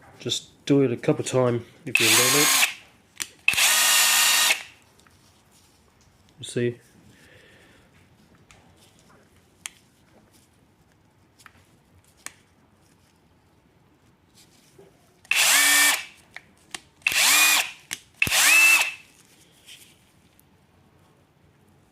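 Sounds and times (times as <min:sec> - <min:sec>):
power drill motor whine: 0:02.0 - 0:02.8, 0:03.5 - 0:04.7, 0:15.3 - 0:16.1, 0:17.1 - 0:19.0.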